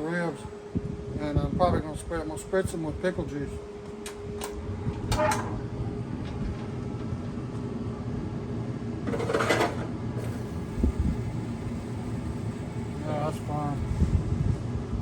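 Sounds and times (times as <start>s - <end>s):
steady low rumble: 10.2s - 15.0s.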